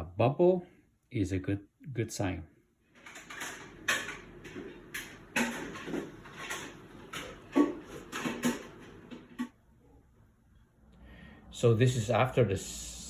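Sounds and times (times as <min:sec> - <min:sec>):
utensil scraping: 0:03.0 - 0:09.5.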